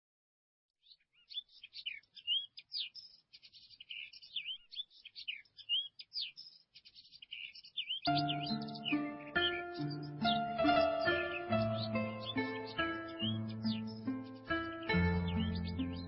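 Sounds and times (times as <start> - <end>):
small songbirds chirping: 0.8 - 16.0.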